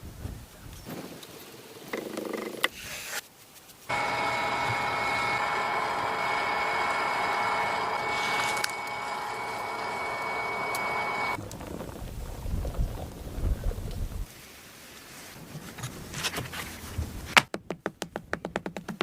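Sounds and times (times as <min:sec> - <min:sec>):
power tool whining: 0:03.9 - 0:11.4.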